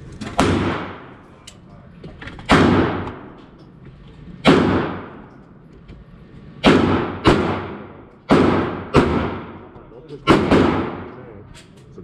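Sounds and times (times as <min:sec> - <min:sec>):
gunshots with long echo: 0:00.3 - 0:01.3, 0:02.5 - 0:03.4, 0:04.4 - 0:05.3, 0:06.5 - 0:11.2.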